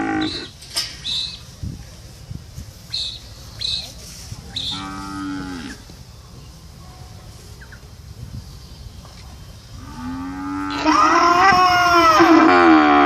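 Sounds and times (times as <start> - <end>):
cow mooing: 0.0 - 0.5, 4.7 - 5.8, 9.8 - 13.0
faint low background noise: 0.0 - 13.0.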